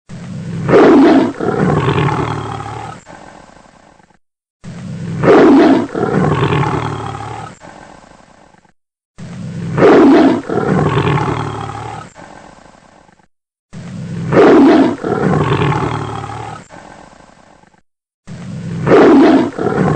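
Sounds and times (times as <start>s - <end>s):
tiger roaring: 0.3s - 3.3s, 4.7s - 7.9s, 9.2s - 12.5s, 13.7s - 16.8s, 18.6s - 19.9s.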